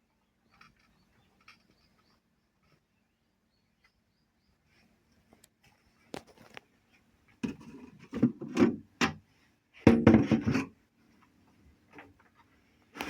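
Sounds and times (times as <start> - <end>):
knocking and scraping of handling: 7.4 - 9.2, 9.9 - 10.8.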